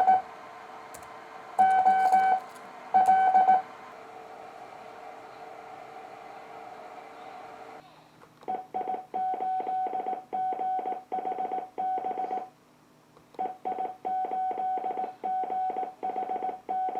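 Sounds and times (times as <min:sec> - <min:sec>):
steady hum: 0:00.0 - 0:07.8
morse code beeps: 0:01.6 - 0:03.6.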